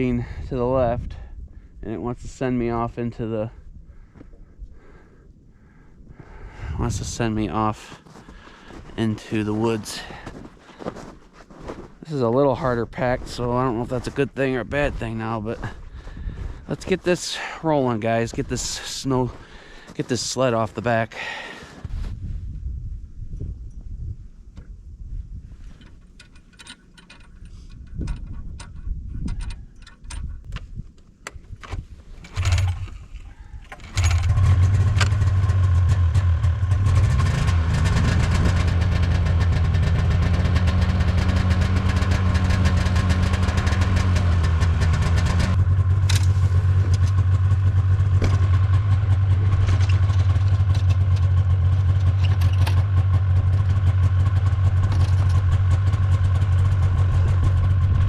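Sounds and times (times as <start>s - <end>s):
snowmobile engine starting: 3.9s - 22.1s, 31.6s - 58.0s
engine clicks and knocks: 33.6s - 58.0s.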